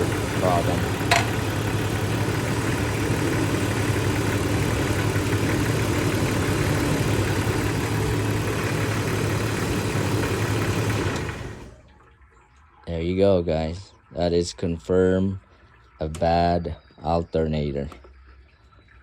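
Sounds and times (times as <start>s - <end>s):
car engine idling and stalling: 0.0s - 12.8s.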